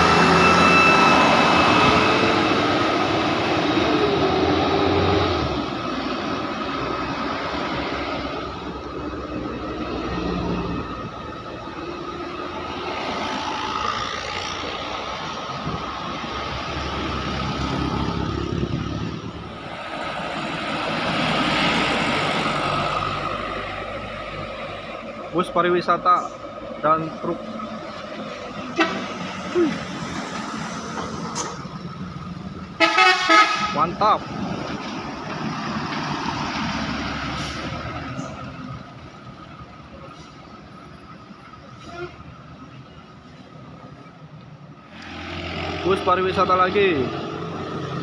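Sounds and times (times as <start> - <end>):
vehicle passing with tyre noise: 0.0 - 33.0, 33.7 - 41.6, 43.1 - 48.0.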